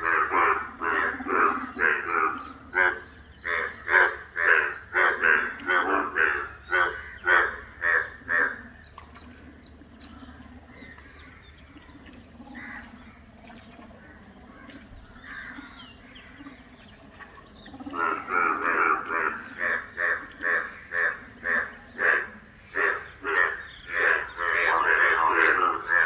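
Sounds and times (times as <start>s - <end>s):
frog croaking: 0.0s - 9.1s, 17.1s - 26.0s.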